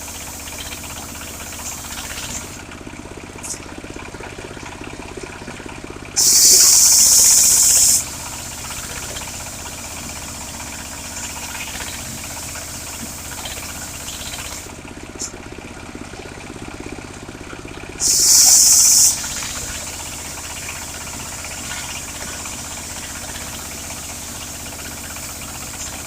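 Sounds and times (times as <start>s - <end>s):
sawmill engine running: 0.0s - 26.0s
loud high hiss: 6.2s - 8.3s, 18.0s - 23.3s.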